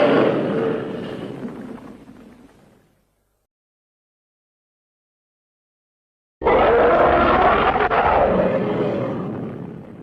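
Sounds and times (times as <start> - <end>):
monster roar: 6.4 - 9.2.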